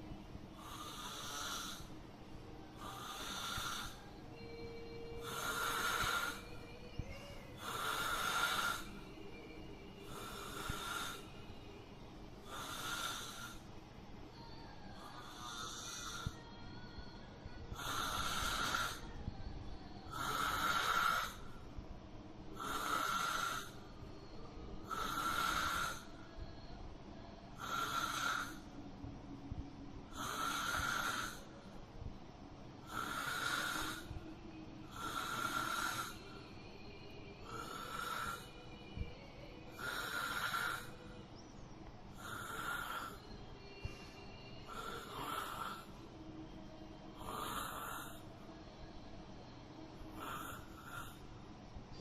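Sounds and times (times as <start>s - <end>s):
person snoring: 0.6s - 1.9s, 2.7s - 11.3s, 12.4s - 13.6s, 15.0s - 16.5s, 17.7s - 19.2s, 20.0s - 21.6s, 22.5s - 23.9s, 24.8s - 26.2s, 27.6s - 28.6s, 30.1s - 31.7s, 32.8s - 34.2s, 34.8s - 36.4s, 37.4s - 38.8s, 39.6s - 41.0s, 42.2s - 43.2s, 44.6s - 46.0s, 47.1s - 48.4s, 50.1s - 51.2s.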